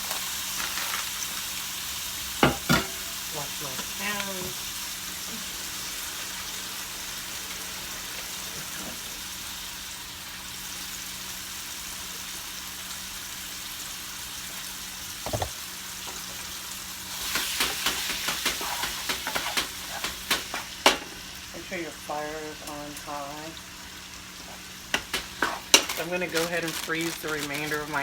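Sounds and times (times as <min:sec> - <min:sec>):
meat frying sizzle: 0:00.0 - 0:28.0
knock: 0:15.2 - 0:15.5
meat stirred in pan: 0:16.1 - 0:28.0.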